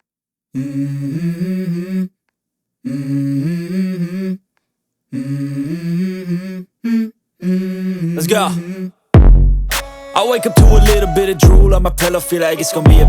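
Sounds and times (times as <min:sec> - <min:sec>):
wordless hummed vocal: 0:00.6 - 0:02.1, 0:02.9 - 0:04.4, 0:05.1 - 0:09.0, 0:10.2 - 0:13.0.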